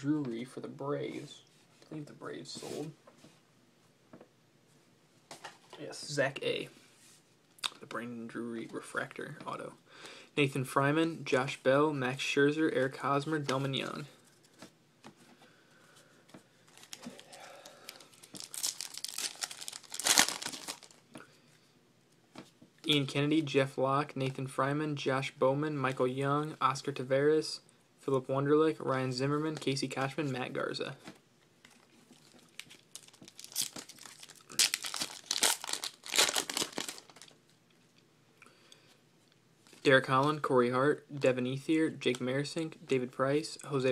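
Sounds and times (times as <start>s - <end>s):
card pack wrapper crinkling and tearing: 16.7s - 21.0s, 31.7s - 37.4s.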